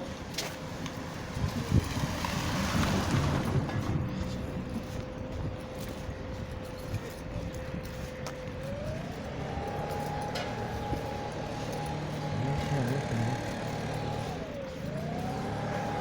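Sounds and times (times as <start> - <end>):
road works machine engine whine: 0.0 - 16.0.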